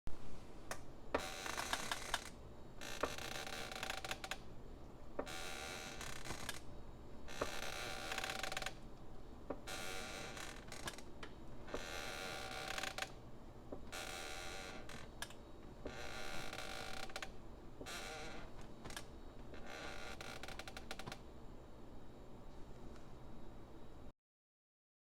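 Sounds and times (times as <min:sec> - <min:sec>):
wooden floorboards creaking: 0:01.2 - 0:04.4, 0:05.2 - 0:06.6, 0:07.3 - 0:08.8, 0:09.5 - 0:11.0, 0:11.7 - 0:13.2, 0:15.8 - 0:21.2.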